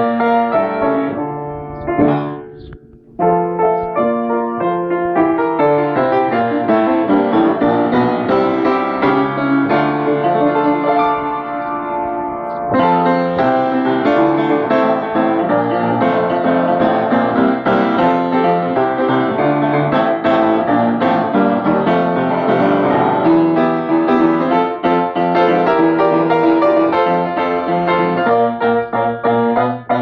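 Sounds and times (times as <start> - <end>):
jazz piano improvisation: 0.0 - 30.0.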